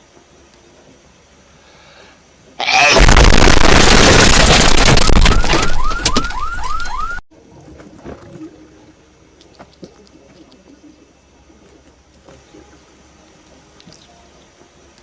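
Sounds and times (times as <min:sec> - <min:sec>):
distorted explosion blast: 0:02.8 - 0:06.5
rising alarm-like whoops: 0:05.2 - 0:07.2.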